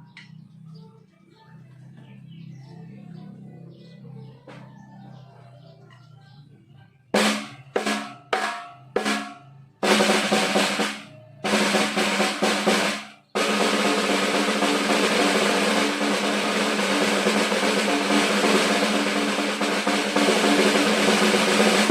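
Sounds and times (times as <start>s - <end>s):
snare drum rolls: 7.2s - 21.9s
snare drum strokes: 7.2s - 21.9s.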